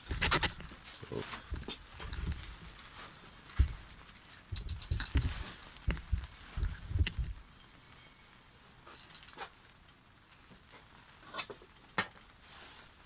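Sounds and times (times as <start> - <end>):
mitre saw parts knocking and clicking: 0.1 - 0.7.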